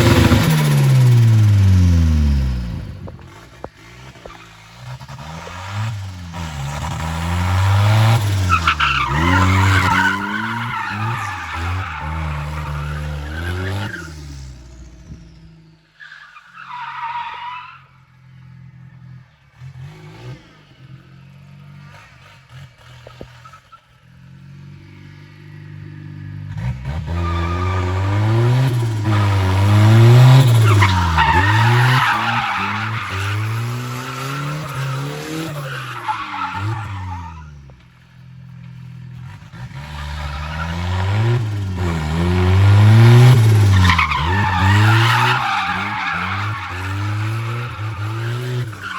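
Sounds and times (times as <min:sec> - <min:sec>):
car engine revving: 0:00.0 - 0:16.0, 0:17.9 - 0:48.9
tyres squealing: 0:27.0 - 0:37.6, 0:42.5 - 0:48.9.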